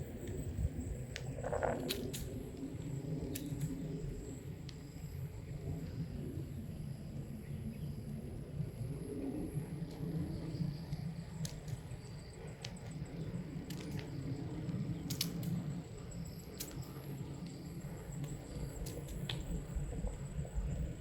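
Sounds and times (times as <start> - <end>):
wind rumbling on microphone: 0.0 - 21.0
faint clicks: 10.9 - 15.6, 16.5 - 19.6.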